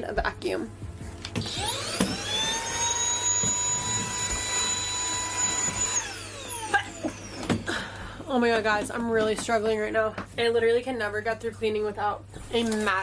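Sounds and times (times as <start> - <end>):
vacuum cleaner motor whine: 1.3 - 8.3.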